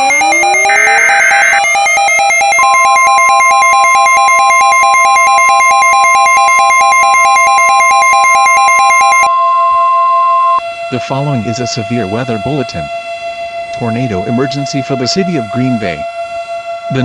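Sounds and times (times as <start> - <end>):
data screech: 0.0 - 2.2
fast-pulsing alternating tone: 0.0 - 2.4
siren-like tones: 0.0 - 4.1, 8.6 - 10.6
steady alarm tone: 0.0 - 10.6.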